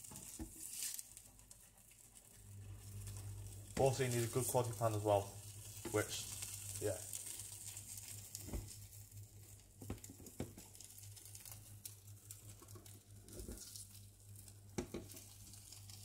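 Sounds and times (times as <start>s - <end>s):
omelette frying in a pan: 0.0s - 16.0s
steady low hum: 2.2s - 10.0s.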